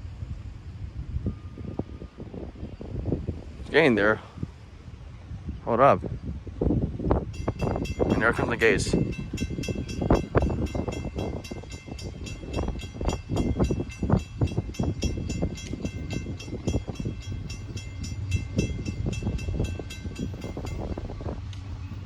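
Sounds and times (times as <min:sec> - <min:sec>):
freight train rumbling: 0:00.0 - 0:22.0
crossing warning bell ringing: 0:07.3 - 0:22.0.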